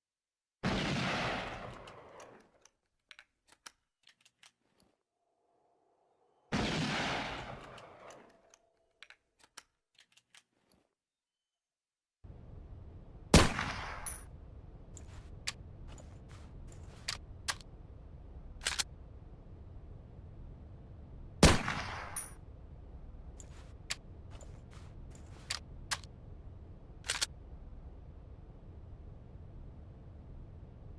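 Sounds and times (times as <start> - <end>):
rifle shots: 0.6 - 2.2, 6.5 - 8.2, 13.3 - 14.2, 21.4 - 22.3.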